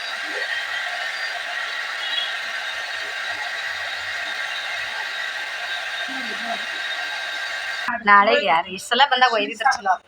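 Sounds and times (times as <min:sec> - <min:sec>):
hair dryer blowing: 0:00.0 - 0:07.9.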